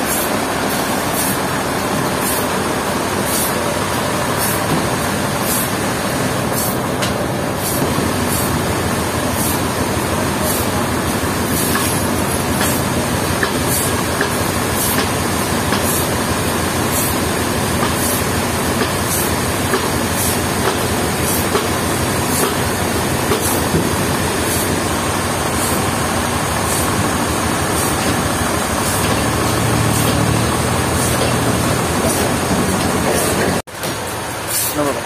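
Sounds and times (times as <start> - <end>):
sawmill saw cutting log: 25.5 - 33.6.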